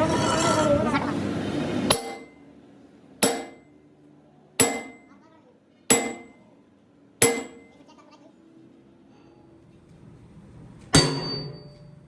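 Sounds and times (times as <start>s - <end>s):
hammer blows on metal: 3.2s - 3.7s, 4.6s - 5.1s, 5.9s - 6.4s, 7.2s - 7.8s.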